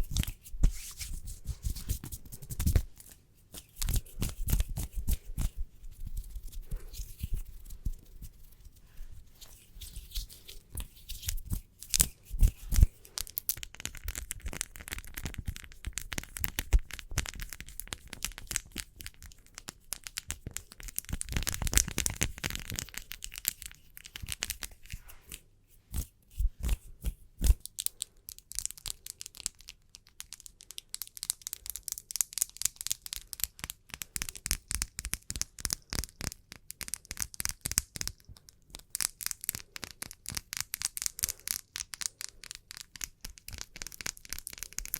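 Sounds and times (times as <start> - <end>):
hands rubbing: 0.0 - 28.1.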